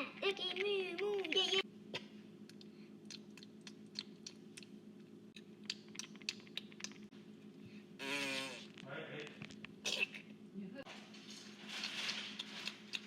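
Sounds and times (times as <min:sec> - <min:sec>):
steady low hum: 0:00.0 - 0:13.0
crunchy chewing: 0:02.5 - 0:07.1, 0:11.6 - 0:13.0.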